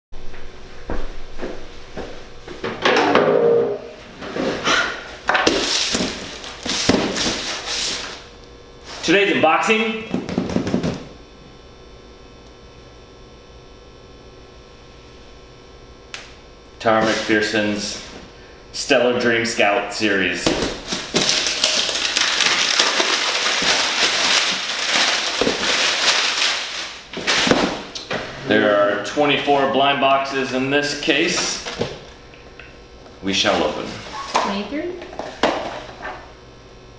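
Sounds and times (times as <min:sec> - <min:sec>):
packaging scraping and rustling: 0:05.4 - 0:08.3, 0:20.6 - 0:27.8.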